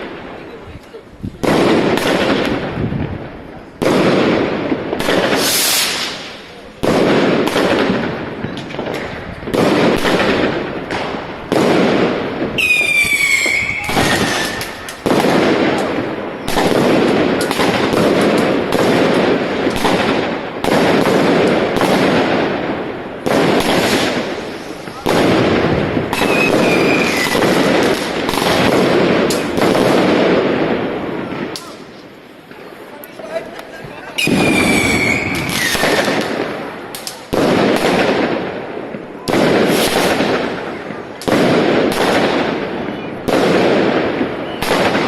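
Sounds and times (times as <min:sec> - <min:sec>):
fireworks bangs with crackle: 0:00.0 - 0:45.0
descending firework whistle: 0:12.6 - 0:15.1, 0:26.1 - 0:27.5, 0:34.2 - 0:36.3.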